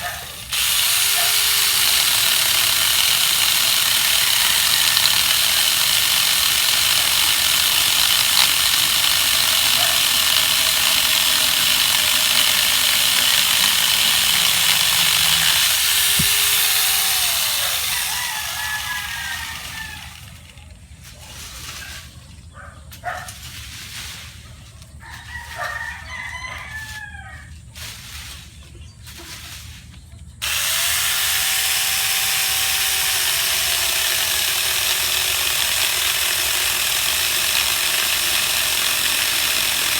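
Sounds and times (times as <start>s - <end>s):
chainsaw running: 0.0s - 20.8s, 30.4s - 39.9s
roosters crowing: 6.3s - 20.7s, 25.0s - 27.6s.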